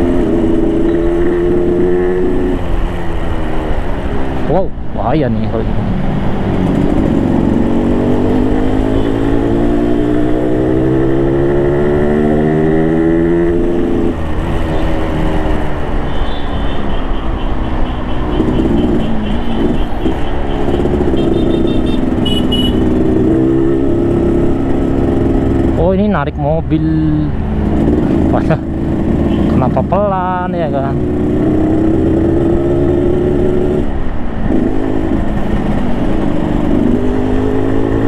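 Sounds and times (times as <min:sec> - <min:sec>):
motorcycle engine accelerating: 0:05.8 - 0:16.0, 0:18.2 - 0:38.0.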